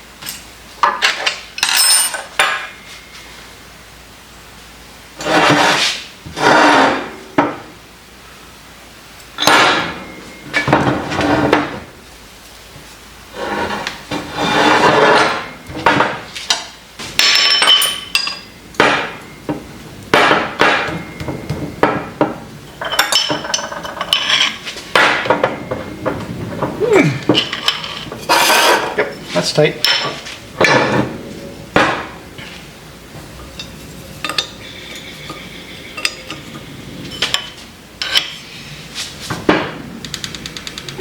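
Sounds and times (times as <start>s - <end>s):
metal scraping strokes: 13.3s - 15.6s, 27.4s - 31.0s
sharp metallic clinks: 17.2s - 18.6s.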